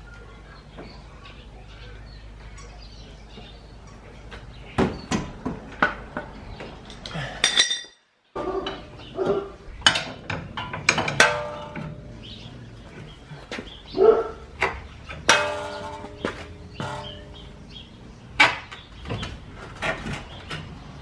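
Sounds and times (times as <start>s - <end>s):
metal tools clinking and clanking: 6.9s - 8.0s, 8.6s - 12.3s
low steady hum: 8.4s - 20.6s.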